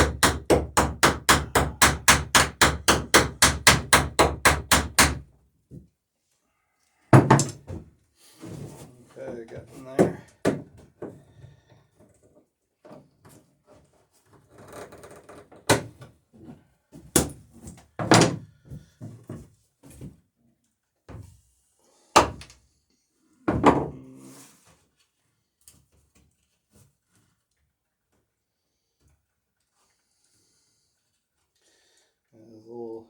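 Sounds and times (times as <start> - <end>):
hammer knocking on rivets: 0.0 - 5.2.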